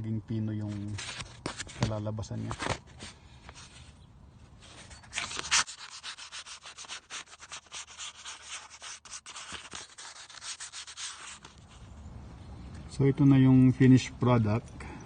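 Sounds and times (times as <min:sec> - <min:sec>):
sandpaper rubbing on metal: 0:04.6 - 0:11.8.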